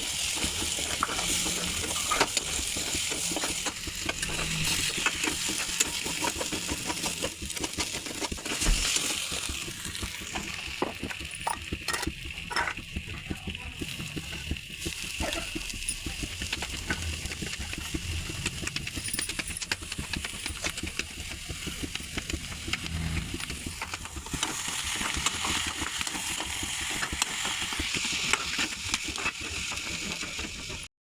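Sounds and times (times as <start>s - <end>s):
vegetables sizzling in a hot pan: 0.0s - 18.9s, 19.6s - 30.9s
spoon scraping pan: 0.2s - 9.0s.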